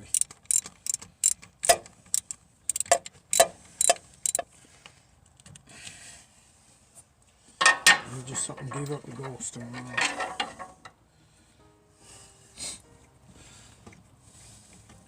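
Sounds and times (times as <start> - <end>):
socket and ratchet clicking: 0.0 - 4.4.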